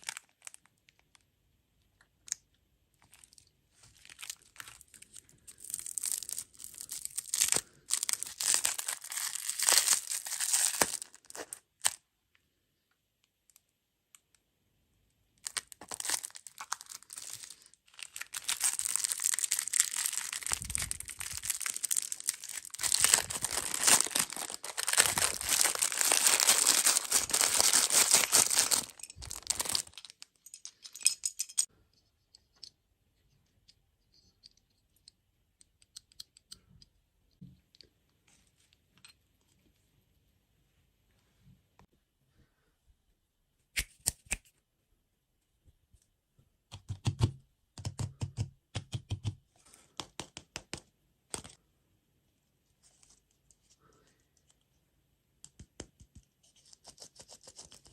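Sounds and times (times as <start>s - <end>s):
plastic packaging crinkling and tearing: 0.0s - 1.2s, 3.0s - 12.0s, 15.4s - 30.2s.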